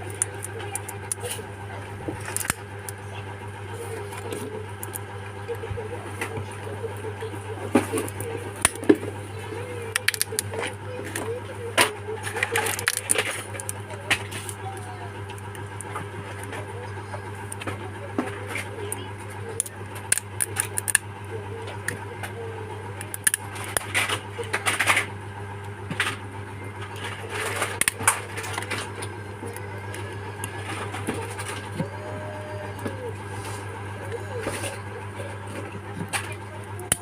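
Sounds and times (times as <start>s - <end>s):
steady low hum: 0.0s - 37.0s.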